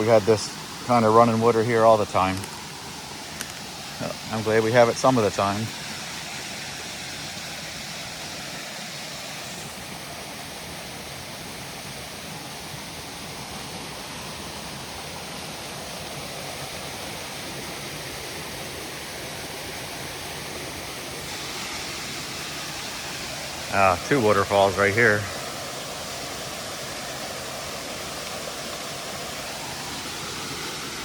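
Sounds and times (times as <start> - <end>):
water rushing over small waterfalls: 0.0 - 31.0.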